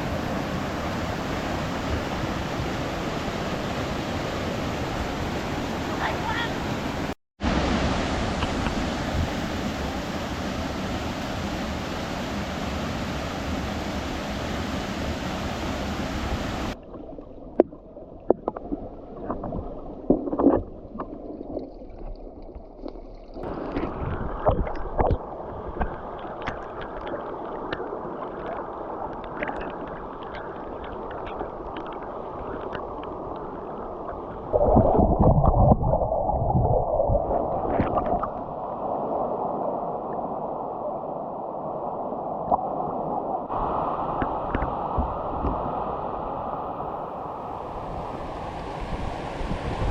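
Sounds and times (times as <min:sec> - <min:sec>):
waterfall rushing: 0:00.0 - 0:16.8
low gurgling surge: 0:15.8 - 0:39.8
underwater bubbling gurgles: 0:16.7 - 0:40.2.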